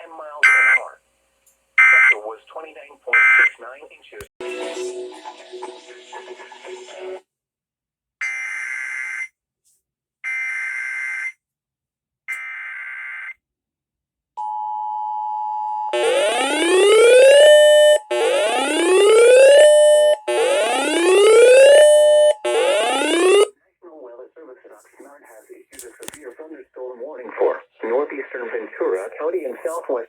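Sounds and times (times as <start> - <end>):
steady warning alarm tone: 14.4 - 23.5
whooping alarm: 14.4 - 23.5
warbling data tones: 16.0 - 23.5.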